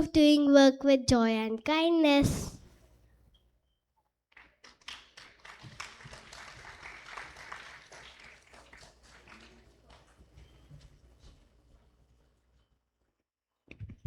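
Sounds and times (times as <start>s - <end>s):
audience clapping: 4.3s - 10.4s.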